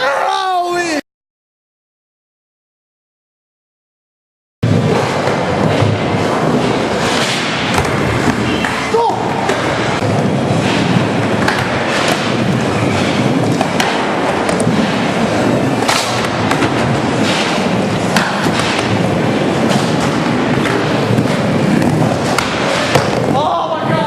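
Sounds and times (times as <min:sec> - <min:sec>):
skateboard wheels rolling on pavement: 0:04.6 - 0:24.0
skateboard clacking: 0:04.8 - 0:23.4.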